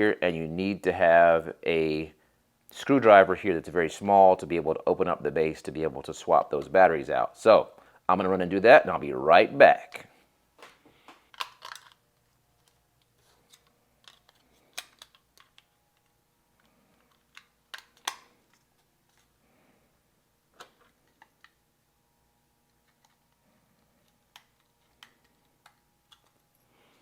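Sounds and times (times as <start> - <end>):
small objects clicking and tapping: 10.6 - 19.3, 22.6 - 26.6.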